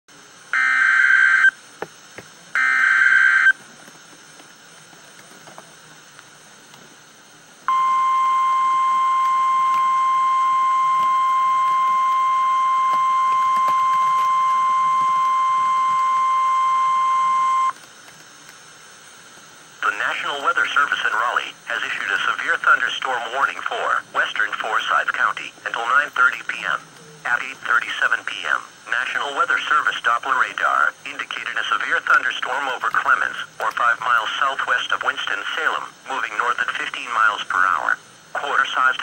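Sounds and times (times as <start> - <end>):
steady alarm tone: 0.5 - 1.6, 2.6 - 3.6, 7.7 - 17.8.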